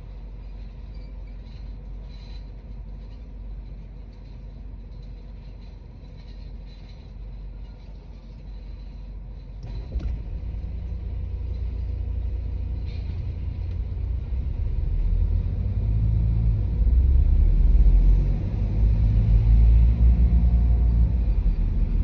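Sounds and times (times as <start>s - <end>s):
car cabin rumble: 9.2s - 22.0s.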